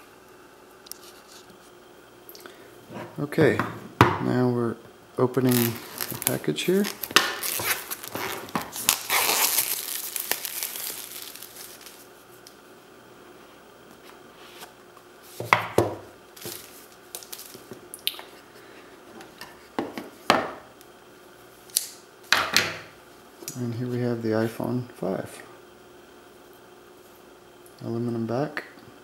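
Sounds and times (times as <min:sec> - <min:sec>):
plastic wrapping tearing and crinkling: 0:05.4 - 0:12.1, 0:16.4 - 0:17.7
packaging rustling and knocking: 0:05.5 - 0:12.0.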